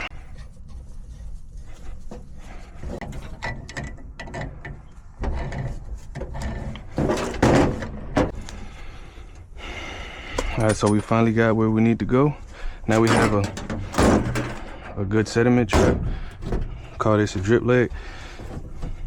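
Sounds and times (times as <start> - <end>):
metal pipe fittings clattering: 2.2 - 8.5, 10.4 - 11.5, 12.9 - 19.0.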